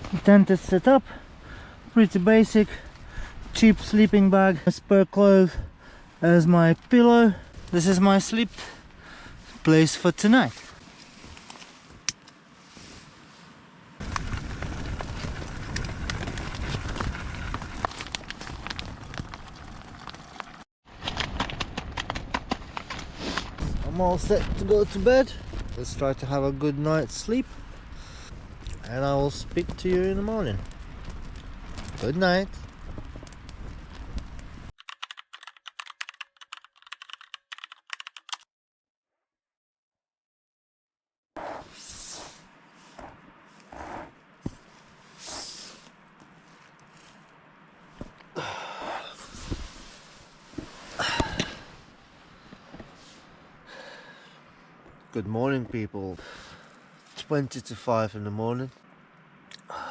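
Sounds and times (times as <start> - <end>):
crackling fabric rustle: 9.3 - 26.4, 41.6 - 48.4, 49.1 - 53.6
wind buffeting microphone: 14.0 - 19.2
computer keyboard typing: 34.8 - 38.4
faint hiss: 41.6 - 42.9, 43.6 - 47.9.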